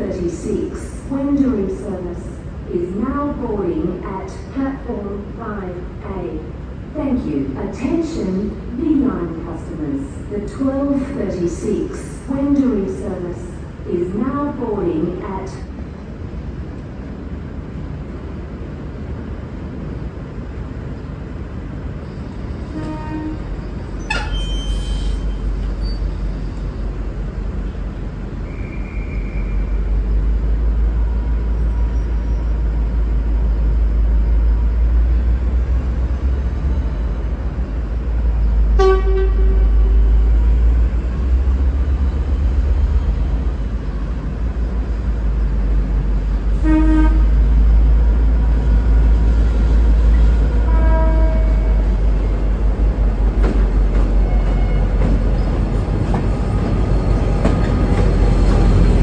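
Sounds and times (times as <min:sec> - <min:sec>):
diesel locomotive rumbling: 0:00.0 - 0:59.0
low locomotive horn toots: 0:22.6 - 0:25.5, 0:38.7 - 0:40.4, 0:46.5 - 0:47.6, 0:50.4 - 0:52.3, 0:54.2 - 0:55.2.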